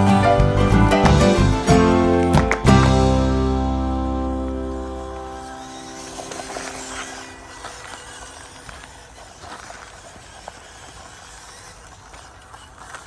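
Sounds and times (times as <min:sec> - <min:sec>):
toy car crunching over rough ground: 0:03.8 - 0:13.0.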